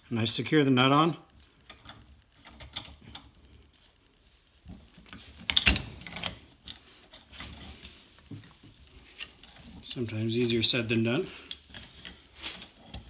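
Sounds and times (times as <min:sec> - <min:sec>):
metal nut clicking and scraping: 0:01.6 - 0:03.4.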